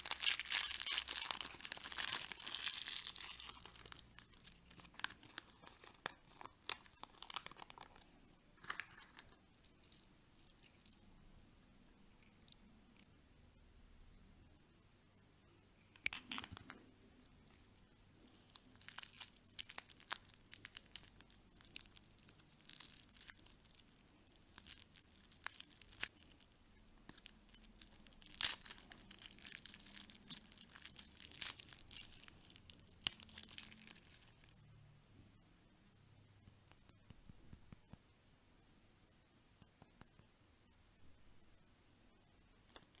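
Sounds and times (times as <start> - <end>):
wrapper crackling and tearing: 0.0 - 11.1, 18.2 - 34.6.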